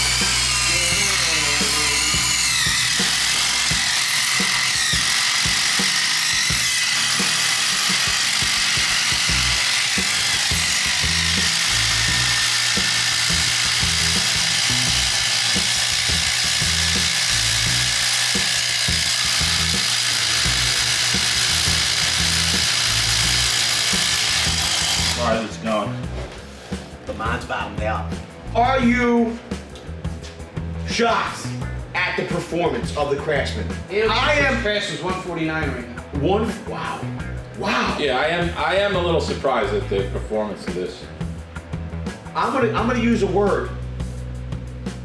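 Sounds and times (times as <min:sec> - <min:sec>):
impact drivers hammering: 0:00.0 - 0:25.3
background music: 0:00.0 - 0:45.0.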